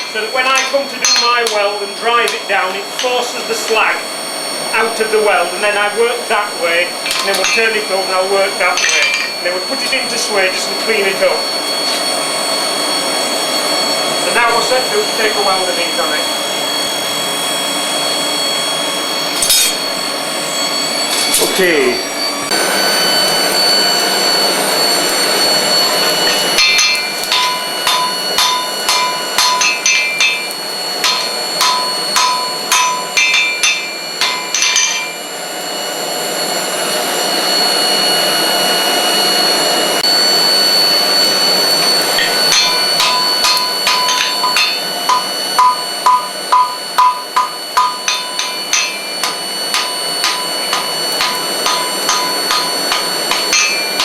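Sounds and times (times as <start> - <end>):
hammer striking iron on anvil: 0.0 - 2.4, 8.8 - 9.4, 19.4 - 19.8, 26.3 - 35.2, 42.2 - 54.0.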